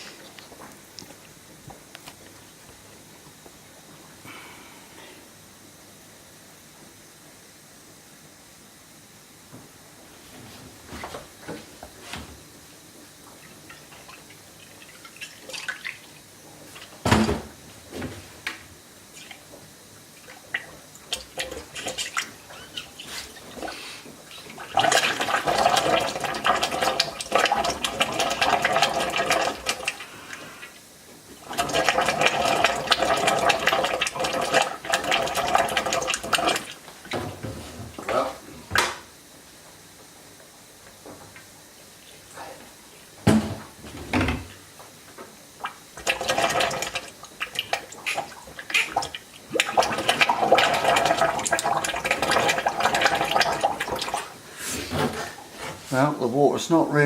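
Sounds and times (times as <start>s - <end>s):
water running: 13.0s - 39.0s, 40.3s - 57.0s.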